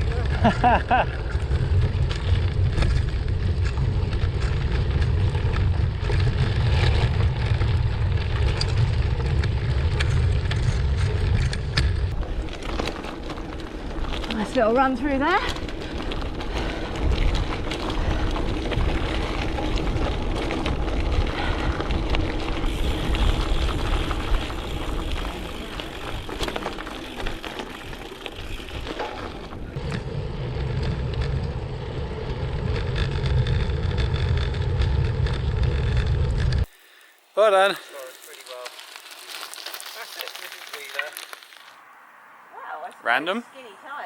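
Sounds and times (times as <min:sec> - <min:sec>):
bike tyres rolling on gravel: 0:00.0 - 0:44.0
loose stones clicking: 0:15.4 - 0:30.0, 0:32.3 - 0:41.7.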